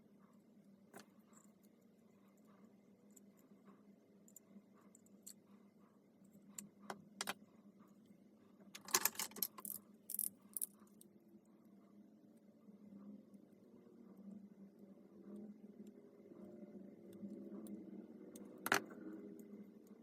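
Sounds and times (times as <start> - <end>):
faint steady hum: 0.0 - 20.0
small metal parts rattling: 8.8 - 10.8.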